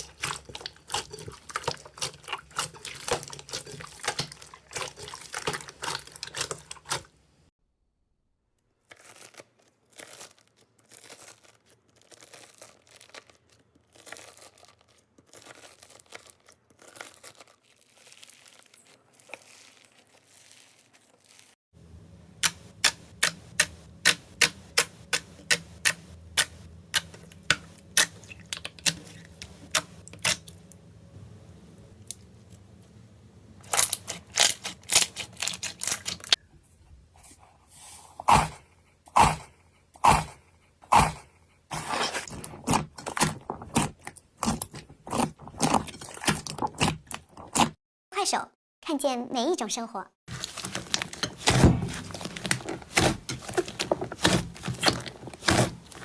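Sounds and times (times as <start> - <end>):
slime crackling and tearing: 8.8 - 21.6, 33.7 - 36.4, 50.3 - 56.0.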